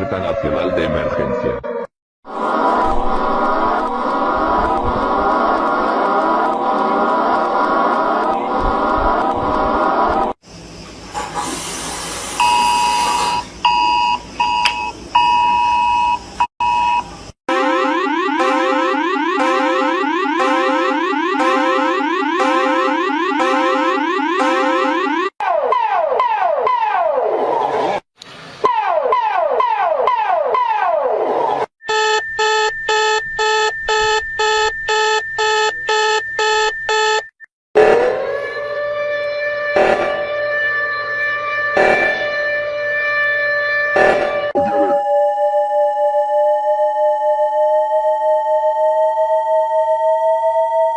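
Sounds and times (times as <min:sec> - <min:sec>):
electronic alert beeps: 0:17.5 - 0:25.3
falling sweep tone: 0:17.5 - 0:25.3
rising alarm tone: 0:17.5 - 0:25.4, 0:37.8 - 0:50.9
steady high tone: 0:17.5 - 0:25.4.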